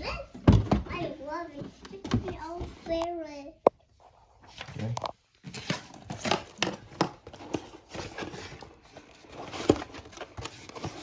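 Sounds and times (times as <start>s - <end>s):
packaging clicks and crinkles: 4.5s - 11.0s.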